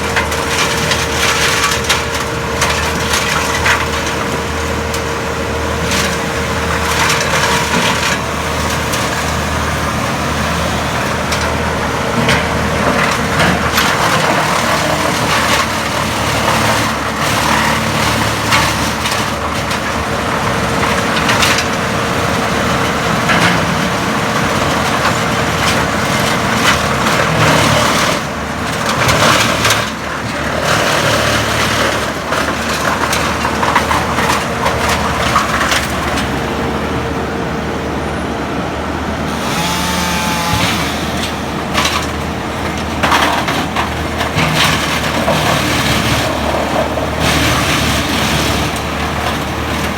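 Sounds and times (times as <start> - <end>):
wood chipper engine drone: 0.0 - 49.9.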